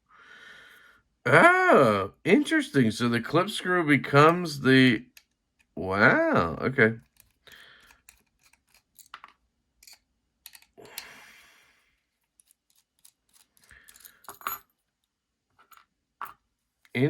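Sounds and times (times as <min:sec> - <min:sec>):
small metal parts clicking: 0:07.0 - 0:11.0, 0:12.2 - 0:14.7.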